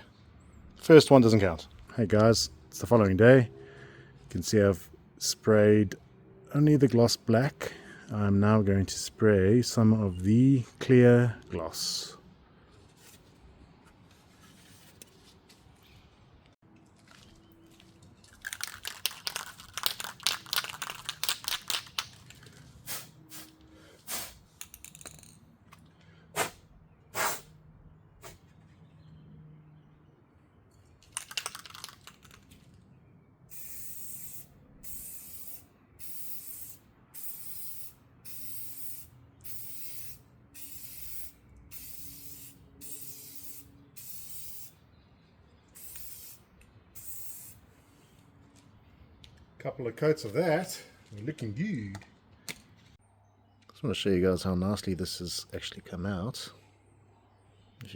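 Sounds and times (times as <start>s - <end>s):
aerosol can rattling when shaken: 18.3s - 22.5s, 31.0s - 32.5s, 45.8s - 46.4s, 47.0s - 47.6s
aerosol spray hisses: 33.6s - 44.7s, 45.8s - 46.4s, 47.0s - 47.6s.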